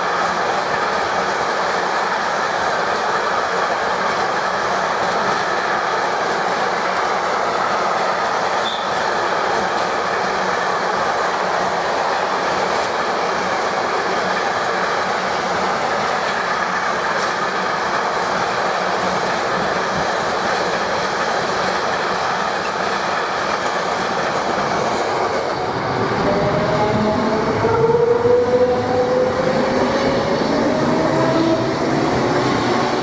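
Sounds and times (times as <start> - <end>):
rising whine: 25.6 - 33.0.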